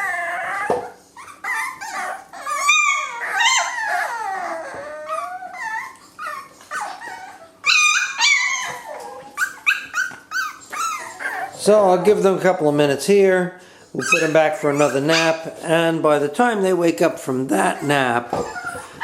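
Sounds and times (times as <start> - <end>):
puppies whining and yipping: 0.0 - 12.6, 13.9 - 15.7, 17.4 - 19.0.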